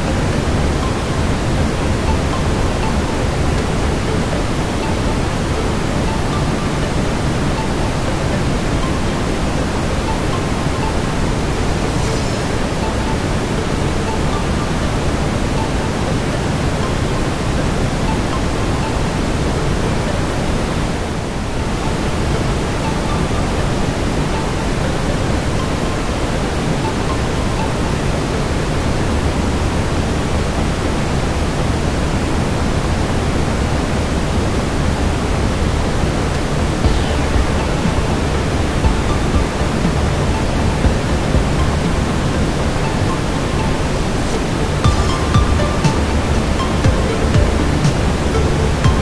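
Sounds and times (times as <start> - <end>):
brown noise hiss: 0.0 - 49.0.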